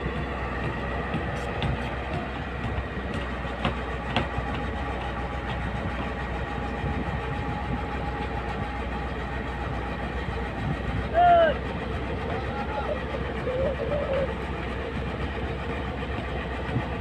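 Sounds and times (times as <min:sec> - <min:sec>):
excavator engine running: 0:00.0 - 0:17.0
sharp knocks: 0:00.2 - 0:05.6.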